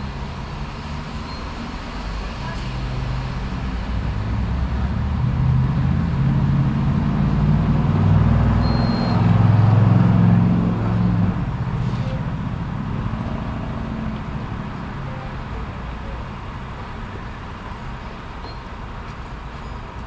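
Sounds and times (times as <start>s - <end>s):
vehicle engine humming: 0.0s - 20.0s
high beep: 8.6s - 9.4s.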